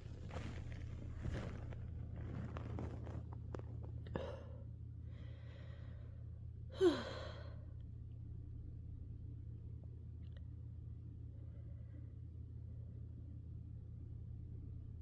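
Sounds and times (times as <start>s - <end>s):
person breathing softly: 5.1s - 6.2s.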